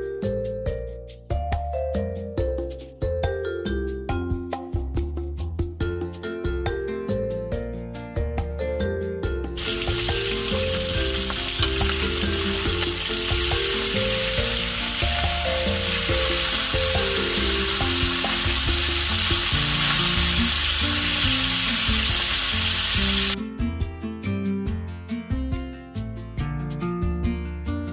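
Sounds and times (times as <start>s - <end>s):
background music: 2.0s - 27.9s
chicken frying in hot oil: 9.6s - 23.4s.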